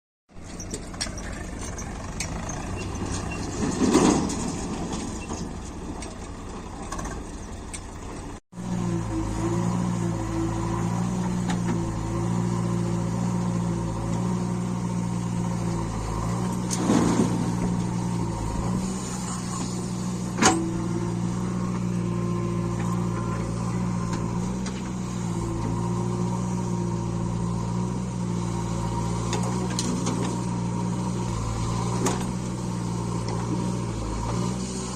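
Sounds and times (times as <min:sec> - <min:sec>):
diesel machinery engine running: 0:00.3 - 0:34.9.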